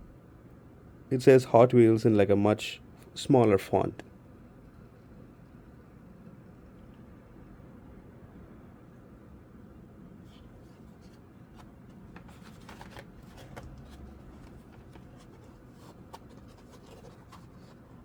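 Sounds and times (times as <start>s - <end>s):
low steady hum: 0.0s - 18.0s
packaging crinkling and clicking: 11.6s - 17.9s.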